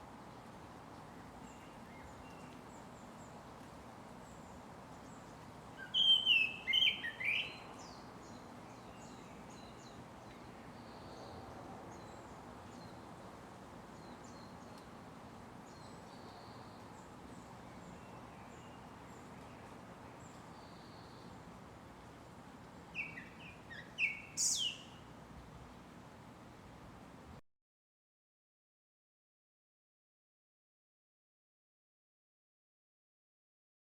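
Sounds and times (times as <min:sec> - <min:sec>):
thrush singing whistled notes: 0:05.8 - 0:07.6, 0:23.0 - 0:25.0.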